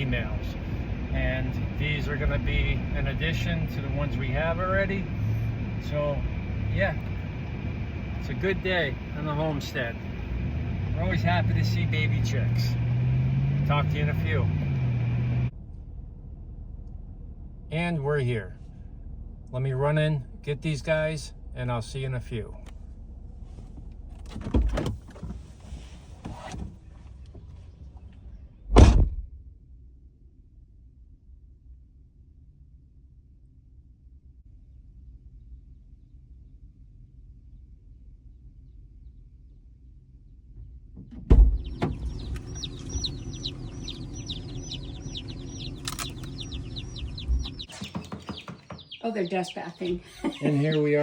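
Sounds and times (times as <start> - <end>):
low rumble: 0.0 - 12.4, 14.4 - 24.6, 26.9 - 47.7
car door opening clunk: 24.1 - 25.6, 28.7 - 29.2, 41.0 - 42.9
car door shutting thud: 24.2 - 25.4, 28.7 - 29.3, 41.0 - 42.8
baby chicks peeping: 41.4 - 51.0.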